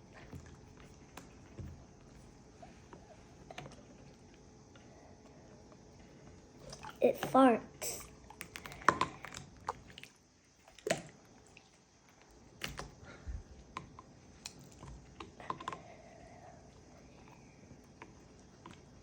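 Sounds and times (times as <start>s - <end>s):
slime squelching: 6.1s - 19.0s.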